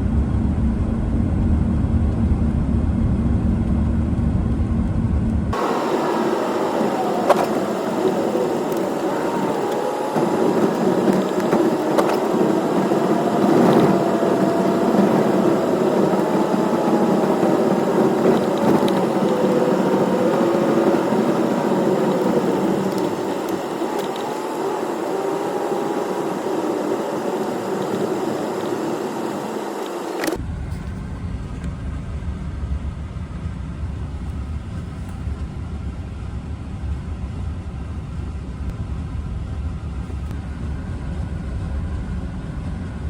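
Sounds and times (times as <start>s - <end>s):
strong wind blowing: 0.0s - 35.8s
wavering wind whistle: 5.5s - 30.4s.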